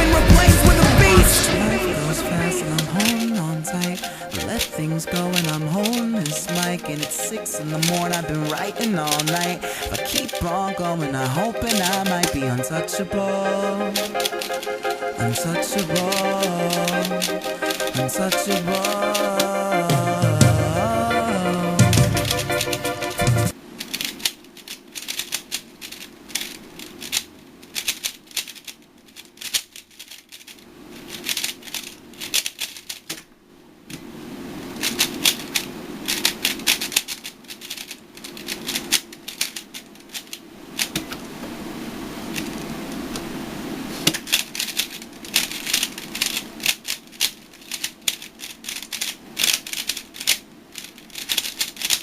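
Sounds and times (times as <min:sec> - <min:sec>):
plastic puzzle cube clacking: 0:02.7 - 0:13.0, 0:13.9 - 0:19.6, 0:21.8 - 0:33.3, 0:34.7 - 0:41.2, 0:42.3 - 0:43.3, 0:44.0 - 0:52.0.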